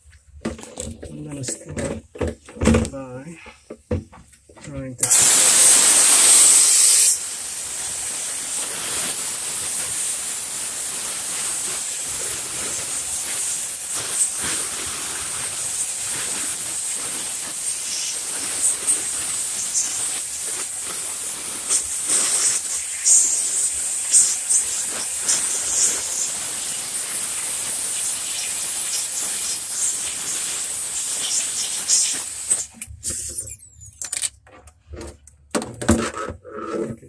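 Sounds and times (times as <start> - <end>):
tool hissing: 5.0 - 33.8.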